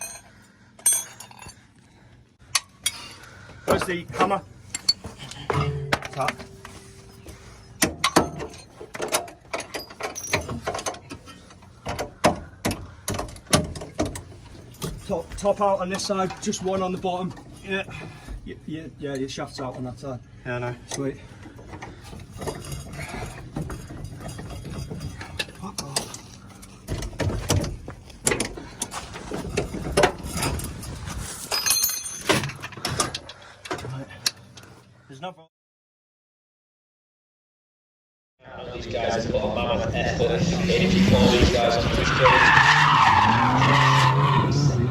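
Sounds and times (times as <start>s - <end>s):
metal knocks and clanks of tools: 0.0s - 1.7s, 2.5s - 18.5s, 20.9s - 34.8s
hand tools knocking on metal: 3.7s - 17.6s
metallic ring: 4.7s - 8.8s.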